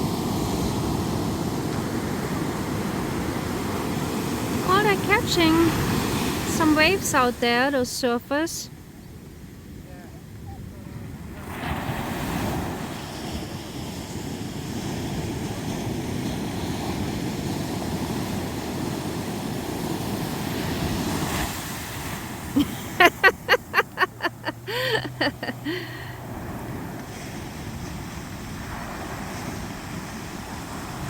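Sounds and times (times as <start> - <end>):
ocean surf washing on beach: 0.0 - 31.0.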